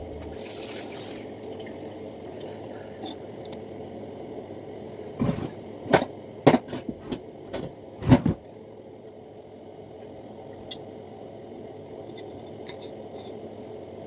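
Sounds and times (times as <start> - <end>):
steady low hum: 0.0 - 8.5
sharp knocks and clatters: 5.2 - 8.4.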